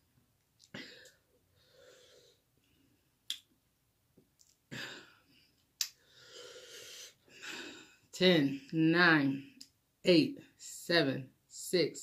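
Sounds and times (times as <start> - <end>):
person breathing out hard: 6.0 - 8.0.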